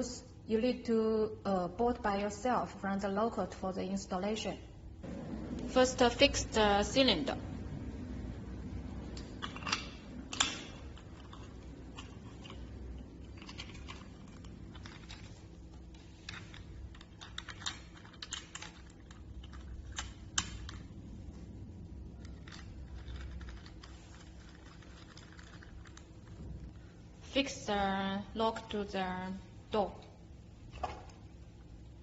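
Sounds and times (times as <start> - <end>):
low steady hum: 0.0 - 32.0
lock parts clicking and tapping: 9.2 - 15.3, 16.3 - 20.9.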